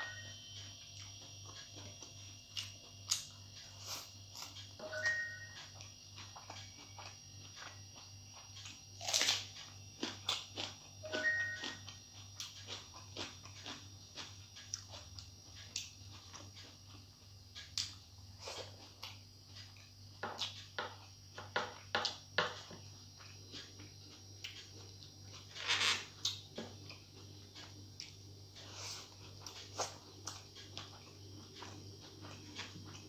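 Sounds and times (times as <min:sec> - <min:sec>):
low steady hum: 0:00.0 - 0:33.0
person chewing with lip smacks: 0:11.6 - 0:20.7, 0:26.2 - 0:33.0.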